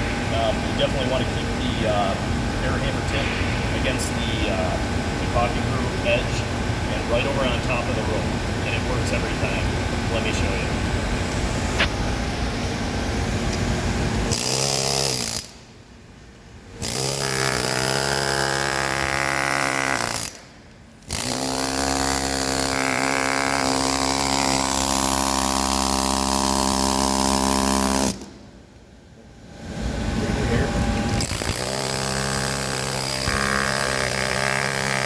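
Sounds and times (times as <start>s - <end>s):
steady hum: 0.0s - 35.0s
pneumatic air hammer: 14.3s - 15.7s, 16.8s - 28.5s, 31.1s - 35.0s.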